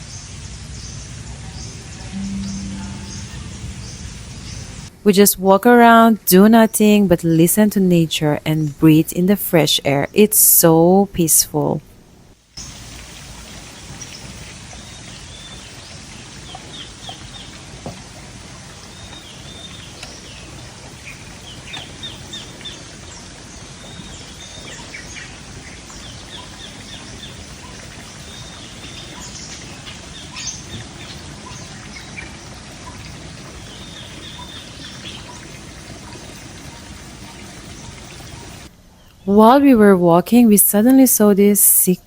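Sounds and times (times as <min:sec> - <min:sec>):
low background hiss: 0:00.0 - 0:42.0
birds chirping and trilling: 0:00.9 - 0:04.9, 0:18.9 - 0:39.3.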